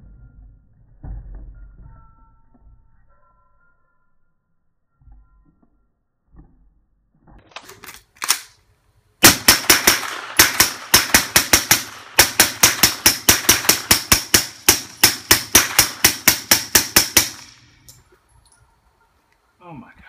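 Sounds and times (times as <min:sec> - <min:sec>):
suppressed pistol shots: 0:09.2 - 0:18.0.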